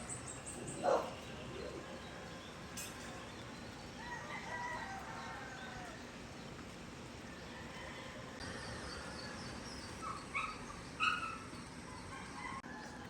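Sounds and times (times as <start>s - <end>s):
faint rooster crowing: 4.0s - 6.2s, 7.3s - 9.5s.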